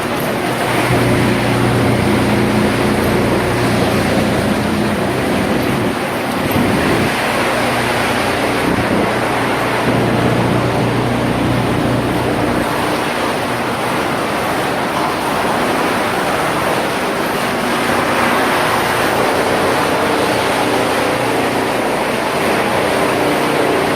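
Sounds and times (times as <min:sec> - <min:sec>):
motor hum: 0:00.0 - 0:23.9
wood chipper machinery noise: 0:00.0 - 0:23.9.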